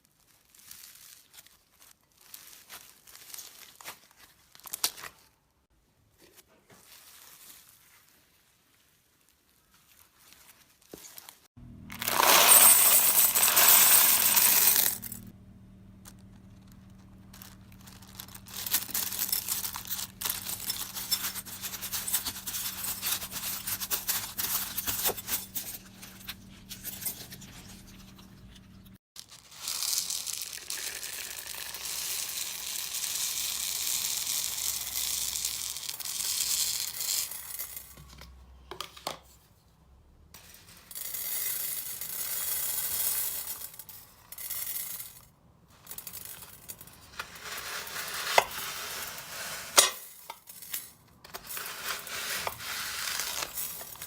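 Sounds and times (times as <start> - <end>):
faint steady hum: 14.2 - 29.0.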